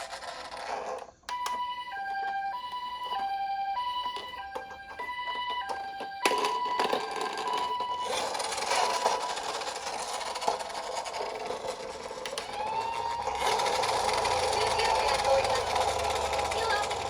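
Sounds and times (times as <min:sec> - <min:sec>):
toy siren beeping: 0:01.3 - 0:17.0
mechanical whirring rattle: 0:08.1 - 0:17.0.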